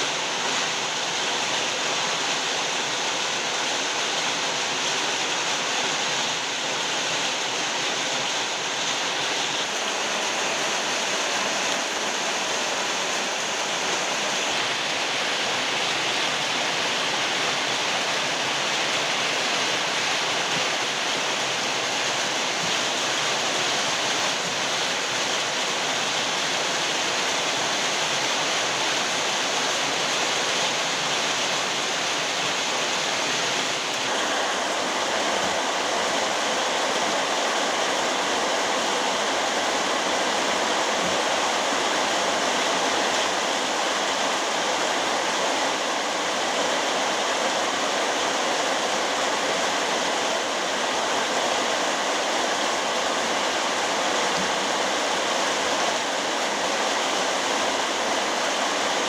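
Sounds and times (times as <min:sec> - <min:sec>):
heavy rain pouring: 0:00.0 - 0:59.0.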